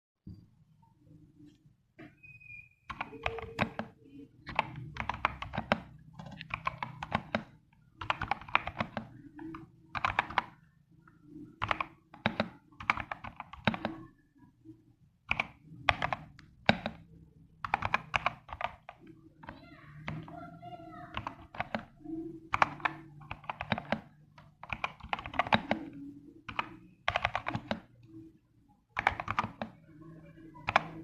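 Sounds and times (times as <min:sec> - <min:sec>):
mechanical keyboard typing: 0:02.9 - 0:10.6, 0:11.5 - 0:14.1, 0:15.3 - 0:20.3, 0:21.1 - 0:28.2, 0:28.9 - 0:31.0.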